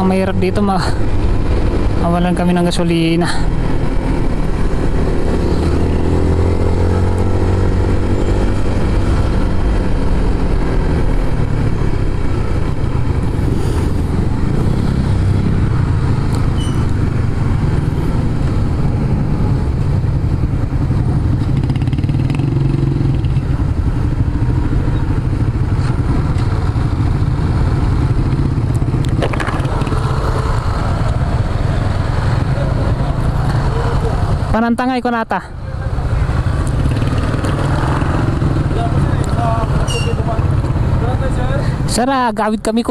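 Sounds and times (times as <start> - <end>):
motorcycle engine running: 0.0 - 34.6, 35.7 - 41.5.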